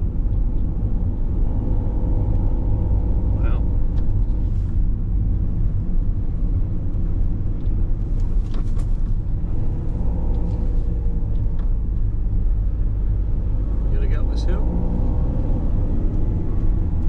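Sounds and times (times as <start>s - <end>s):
engine and road rumble: 0.0s - 17.0s.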